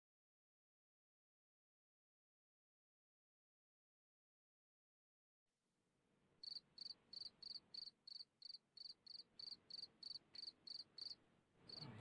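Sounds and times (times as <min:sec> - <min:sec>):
cricket chirping: 0:06.4 - 0:12.0.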